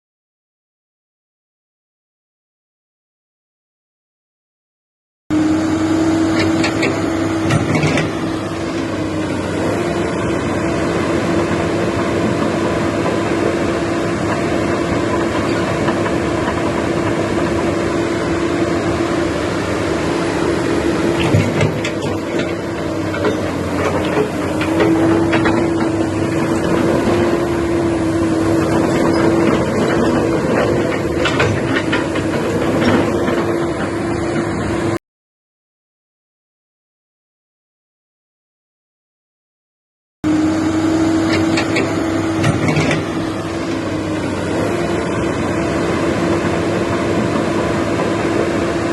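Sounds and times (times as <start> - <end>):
excavator diesel engine running: 5.3 - 35.0, 40.3 - 48.9.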